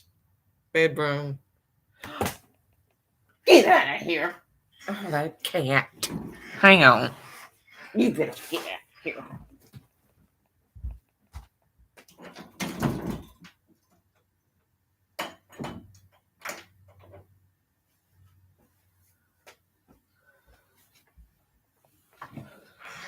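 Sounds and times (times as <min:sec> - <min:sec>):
door knocks and bumps: 0:12.4 - 0:13.4.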